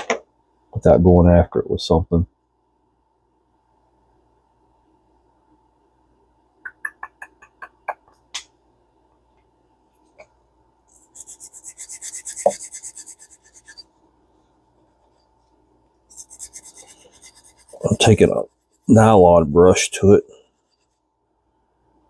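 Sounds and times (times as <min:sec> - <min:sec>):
brush scrubbing on metal: 0:11.0 - 0:13.9, 0:16.1 - 0:19.0.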